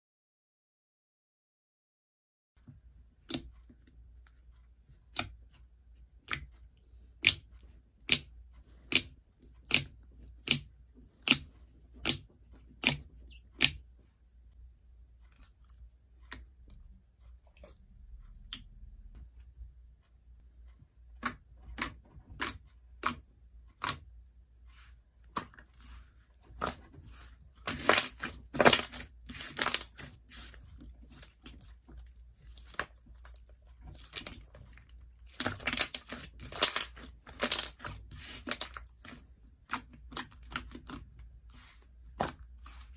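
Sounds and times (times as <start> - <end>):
slime popping and crackling: 27.6 - 30.5, 35.3 - 41.0.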